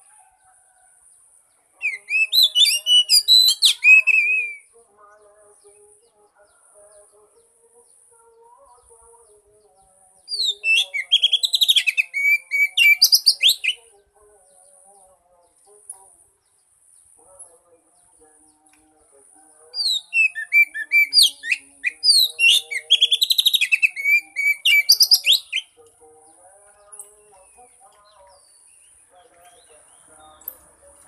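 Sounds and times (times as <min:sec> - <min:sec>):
bird singing whistled notes: 0:01.8 - 0:04.7, 0:10.2 - 0:13.9, 0:19.8 - 0:25.8.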